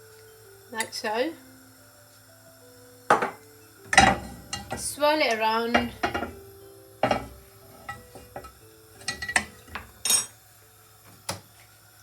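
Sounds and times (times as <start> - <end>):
frying pan and utensils knocking: 3.1 - 10.3.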